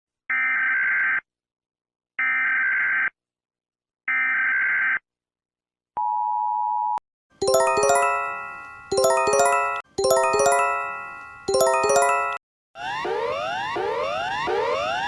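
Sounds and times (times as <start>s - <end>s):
chiming jingle: 7.4s - 12.4s.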